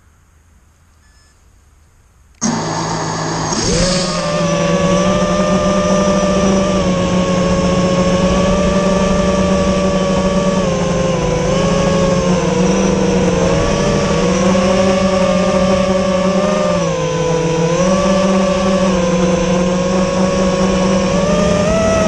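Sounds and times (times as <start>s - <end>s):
drone propellers whining: 2.4s - 22.0s.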